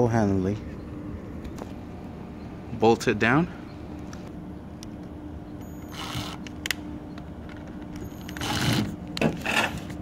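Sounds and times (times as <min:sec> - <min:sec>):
steady low hum: 0:00.0 - 0:10.0
screwdriver scrapes and clicks: 0:08.0 - 0:09.9.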